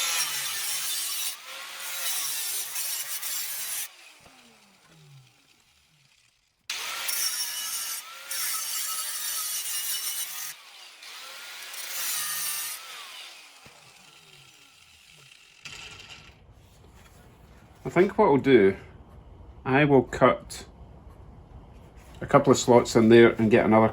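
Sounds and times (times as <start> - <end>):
power tool cutting pipe: 0.0 - 16.3.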